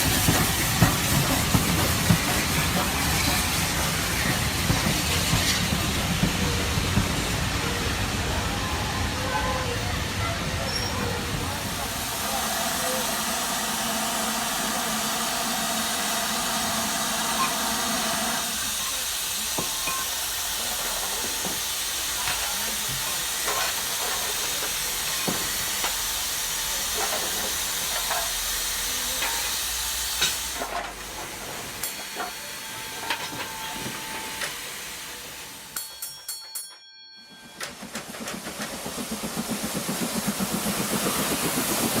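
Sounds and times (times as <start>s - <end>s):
steam hiss: 0.0s - 36.1s, 37.8s - 42.0s
wheels clicking over rail joints: 35.8s - 42.0s.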